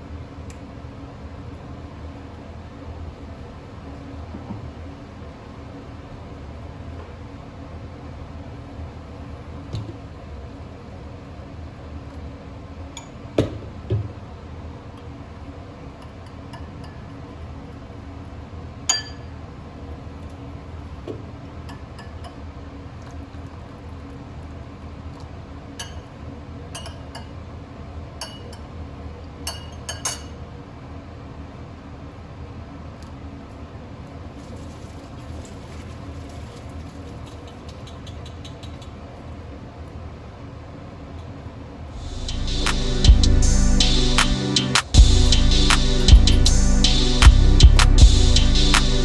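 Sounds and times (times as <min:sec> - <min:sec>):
steady low hum: 0:41.9 - 0:49.0.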